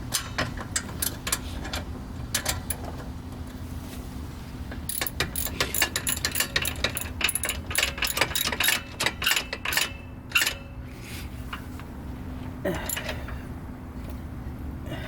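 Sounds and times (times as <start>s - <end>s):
ratchet wrench clicking: 4.9s - 10.6s.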